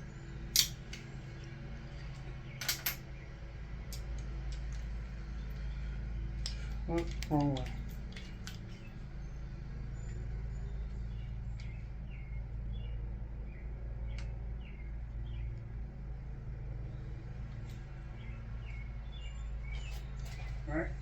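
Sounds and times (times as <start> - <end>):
small birds chirping: 0.0 - 21.0
steady low hum: 0.0 - 21.0.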